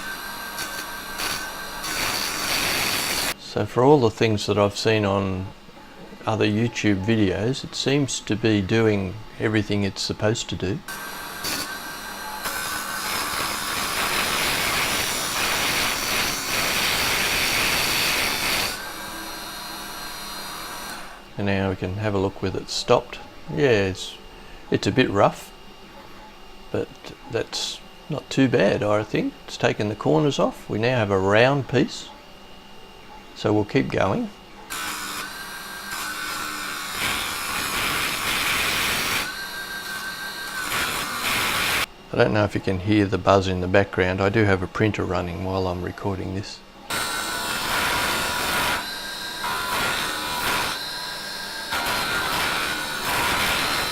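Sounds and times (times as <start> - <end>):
chisel scraping spinning wood: 0.0 - 3.4
lathe motor whine: 0.0 - 3.4, 5.2 - 21.4, 33.4 - 42.1, 42.7 - 53.9.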